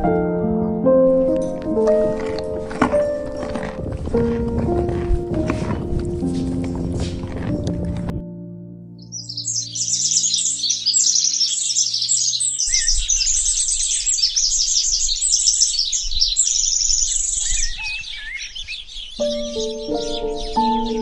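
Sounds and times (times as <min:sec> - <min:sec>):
music with held notes: 0:00.0 - 0:11.7, 0:19.2 - 0:21.0
small birds twittering: 0:09.0 - 0:21.0
gliding bird whistles: 0:09.2 - 0:15.7.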